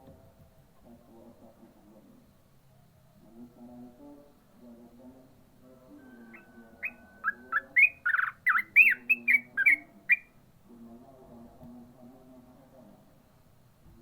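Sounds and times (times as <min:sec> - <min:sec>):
bird singing chattering notes: 0:06.3 - 0:10.4.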